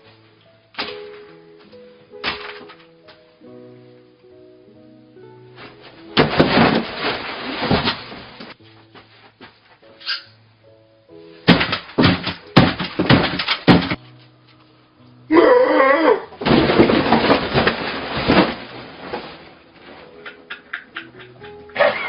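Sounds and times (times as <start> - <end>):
soft background music: 0.0 - 22.0
crunching and crashing effects: 5.6 - 8.6, 16.4 - 20.0.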